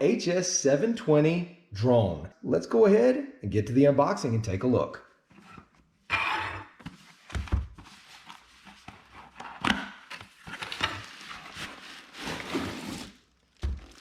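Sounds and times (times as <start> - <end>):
packaging rustling: 8.0 - 14.0
box sliding scrape: 11.3 - 13.2.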